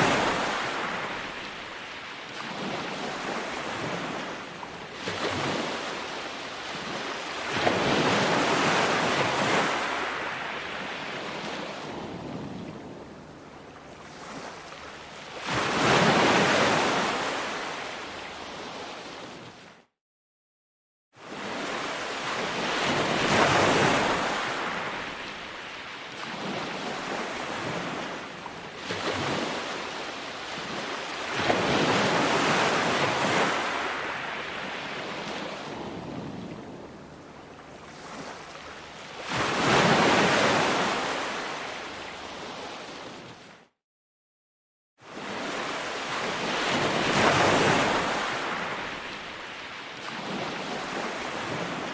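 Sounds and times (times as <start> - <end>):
ocean surf breaking on beach: 0.0 - 13.0, 21.2 - 37.0, 45.1 - 51.9.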